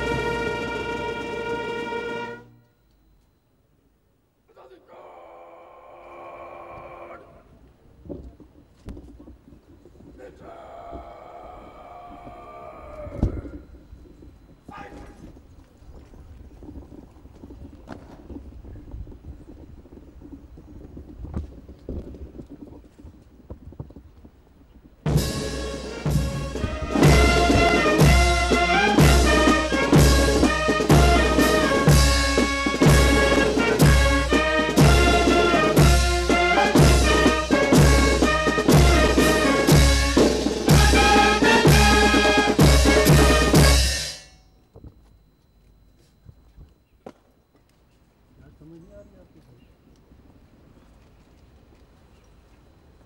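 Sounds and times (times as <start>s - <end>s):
brass-led music: 0.0s - 2.6s, 25.1s - 44.2s
siren steady tone: 11.1s - 16.1s, 40.8s - 49.5s
heavy bass drum beat: 25.1s - 44.2s.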